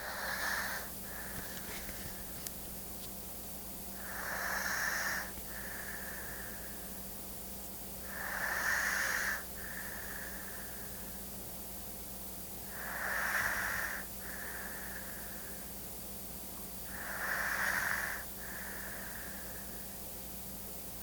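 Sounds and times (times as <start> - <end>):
faint steady hum: 0.0 - 21.0
person snoring: 4.0 - 6.4, 12.7 - 15.2, 16.9 - 19.6.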